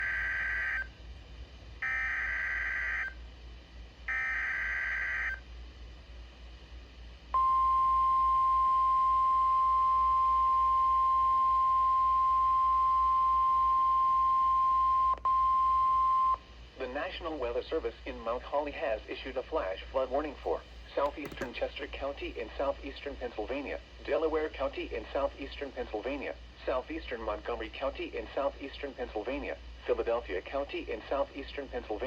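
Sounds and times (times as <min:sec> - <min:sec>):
steady alarm tone: 0:00.0 - 0:00.9, 0:01.8 - 0:03.2, 0:04.1 - 0:05.4.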